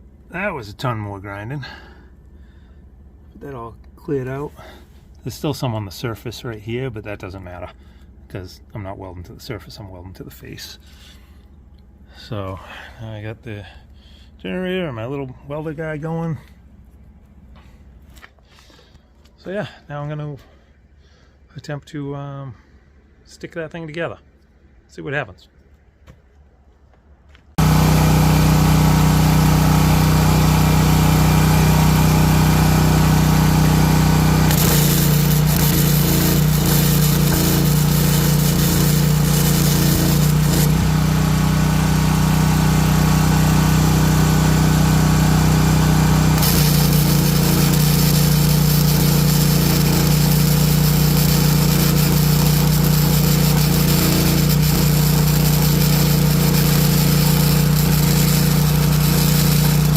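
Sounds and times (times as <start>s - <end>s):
generator engine running: 27.6s - 59.9s
welding arc crackling: 27.6s - 59.9s.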